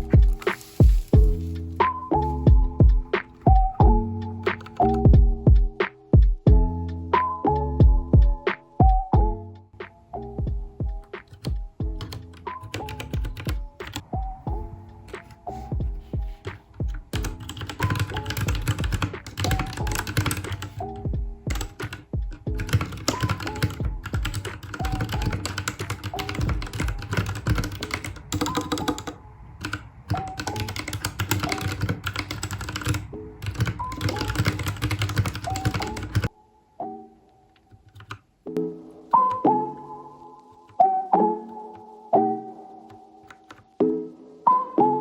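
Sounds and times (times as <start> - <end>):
gentle background music: 0.0 - 45.0
fast typing on mechanical keyboard: 11.2 - 14.0, 16.4 - 20.8, 21.5 - 36.3, 37.8 - 38.2.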